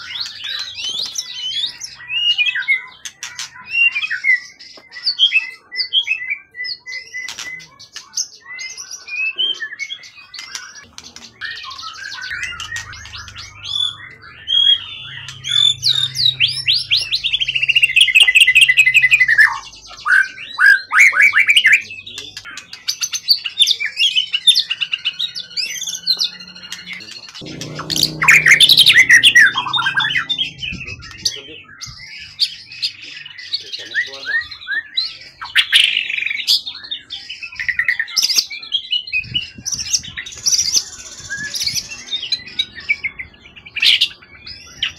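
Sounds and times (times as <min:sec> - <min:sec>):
songbird singing trills: 0:09.6 - 0:22.5
low rumble: 0:12.2 - 0:19.4, 0:27.4 - 0:31.7.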